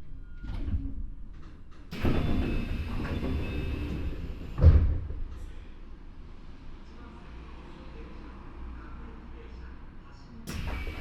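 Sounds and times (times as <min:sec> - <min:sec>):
train door air hiss: 0:02.0 - 0:04.7, 0:10.5 - 0:11.0.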